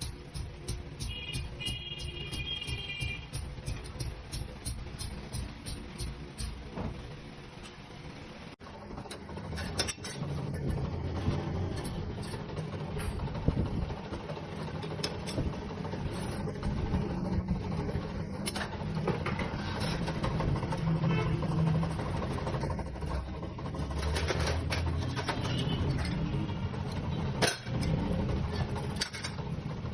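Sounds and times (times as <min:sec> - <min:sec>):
wire clicking and ticking: 0:00.0 - 0:06.6.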